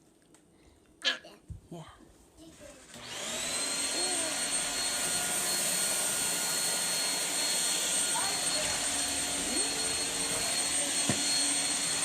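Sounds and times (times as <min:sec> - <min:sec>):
vacuum motor whine: 0:02.9 - 0:12.0.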